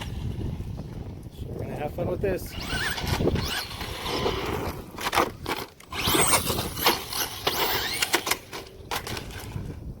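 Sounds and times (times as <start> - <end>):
rc truck motor whining: 2.4 - 9.5.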